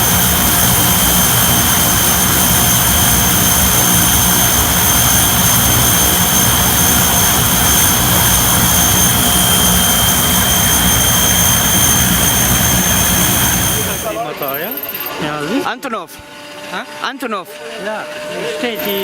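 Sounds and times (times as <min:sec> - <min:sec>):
large engine running steadily: 0:00.0 - 0:14.2
low pulsing: 0:00.0 - 0:14.4
high whining tones: 0:00.0 - 0:19.0.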